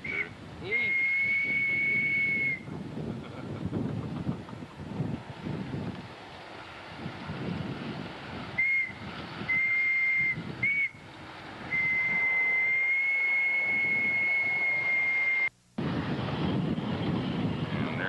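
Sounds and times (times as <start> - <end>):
steam whistle blasts: 0.0 - 2.6, 8.6 - 11.0, 11.7 - 15.5.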